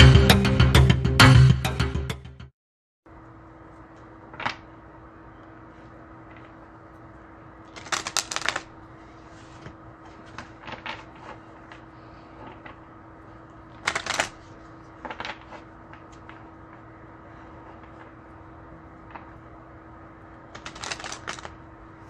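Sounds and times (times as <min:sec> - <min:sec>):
faint steady hum: 0:03.1 - 0:22.0
cards shuffling: 0:07.7 - 0:12.8, 0:13.7 - 0:16.8, 0:20.5 - 0:21.6.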